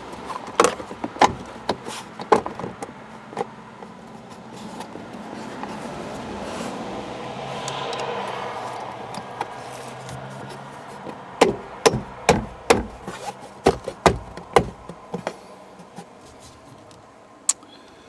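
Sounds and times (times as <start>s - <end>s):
knocks on plastic trim panel: 0.5s - 3.5s, 11.0s - 15.4s.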